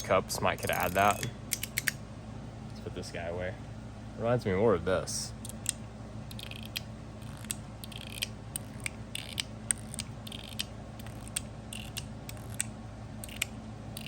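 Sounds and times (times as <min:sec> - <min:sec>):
metal fidget slider clicking: 0:05.5 - 0:14.0.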